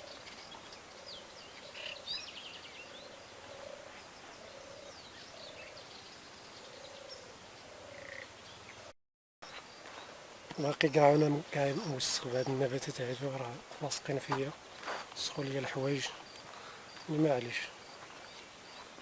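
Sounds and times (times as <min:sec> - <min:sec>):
low repeating bird call: 0:00.0 - 0:08.9.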